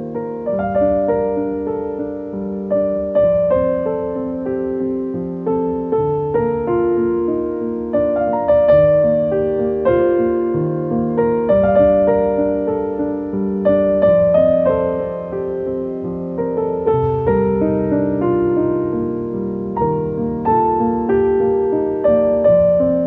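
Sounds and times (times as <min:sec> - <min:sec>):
gentle piano music: 0:00.0 - 0:23.0.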